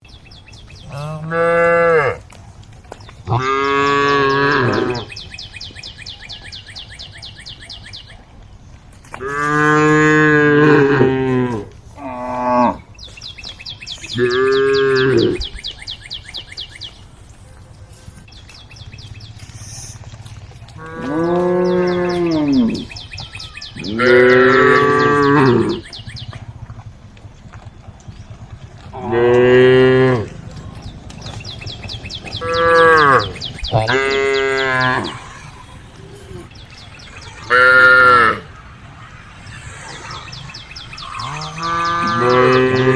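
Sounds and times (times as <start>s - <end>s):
cows mooing: 0.8s - 2.4s, 3.2s - 5.2s, 9.2s - 12.9s, 13.7s - 15.6s, 19.8s - 26.9s, 27.6s - 38.6s, 39.5s - 42.9s.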